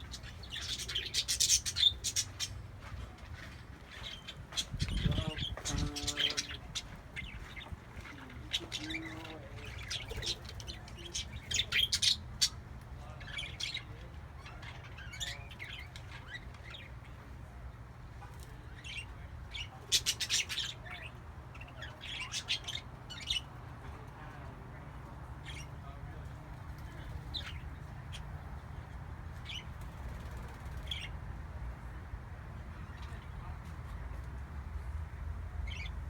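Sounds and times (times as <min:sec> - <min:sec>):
parakeets chirping and squeaking: 0:00.0 - 0:02.7, 0:03.4 - 0:12.6, 0:13.2 - 0:17.1, 0:18.7 - 0:23.5, 0:25.4 - 0:25.8, 0:26.9 - 0:28.4, 0:29.4 - 0:31.1, 0:35.7 - 0:35.9.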